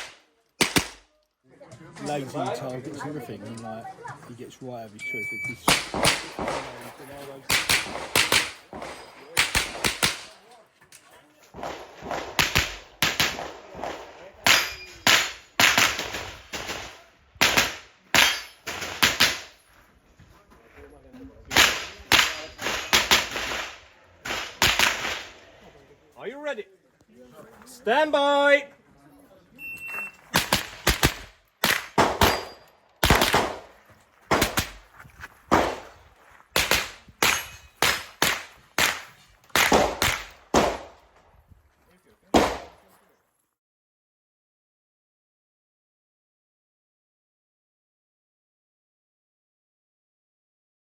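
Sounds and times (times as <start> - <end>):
rifle shots: 0.0 - 1.1, 5.6 - 10.4, 11.6 - 19.5, 21.5 - 25.5, 30.3 - 34.8, 35.5 - 36.0, 36.6 - 41.1, 42.3 - 42.8
steel targets ringing: 14.5 - 15.3, 32.2 - 32.7, 37.3 - 37.8.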